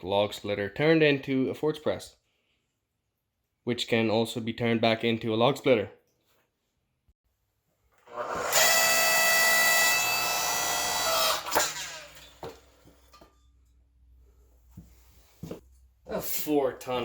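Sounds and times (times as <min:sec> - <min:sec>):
hydraulic pump motor whining: 0:08.1 - 0:12.1.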